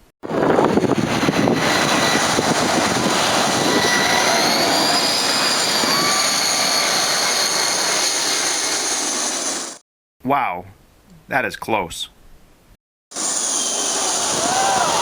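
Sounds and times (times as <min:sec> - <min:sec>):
airplane passing overhead: 0:00.2 - 0:09.8, 0:13.2 - 0:15.0.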